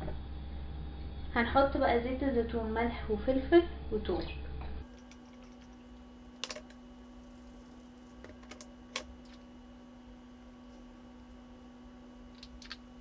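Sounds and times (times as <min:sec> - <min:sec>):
faint hum: 0:00.0 - 0:13.0.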